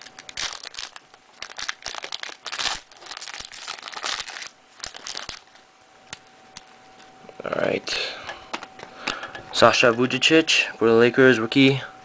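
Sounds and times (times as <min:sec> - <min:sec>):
wrapper tearing and crinkling: 0:00.0 - 0:05.6.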